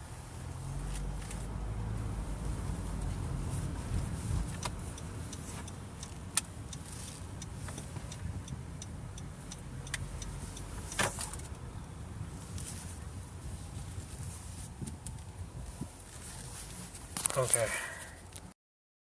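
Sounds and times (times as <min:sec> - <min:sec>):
road and engine rumble: 0:00.0 - 0:18.6
light clicks and ticks: 0:04.0 - 0:11.6.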